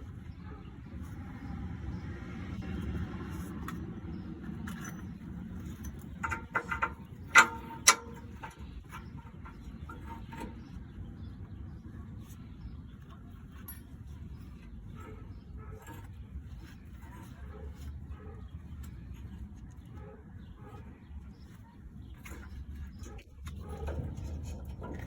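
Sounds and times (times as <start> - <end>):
metal exhaust pipe clanking: 3.3 - 12.3, 22.3 - 25.0.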